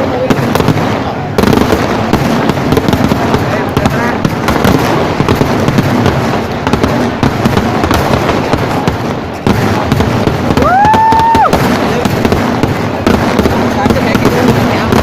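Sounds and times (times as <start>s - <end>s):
fireworks bangs and crackling: 0.0s - 15.0s.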